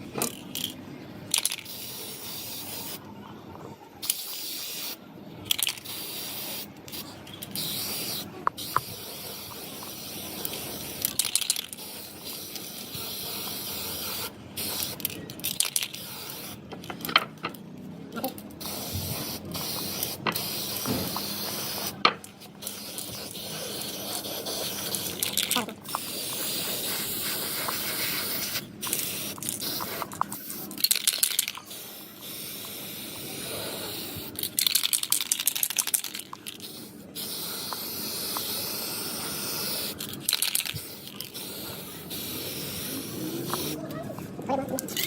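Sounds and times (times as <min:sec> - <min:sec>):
spraying hiss bursts: 0:18.6 - 0:22.0, 0:22.6 - 0:30.7, 0:36.6 - 0:43.8.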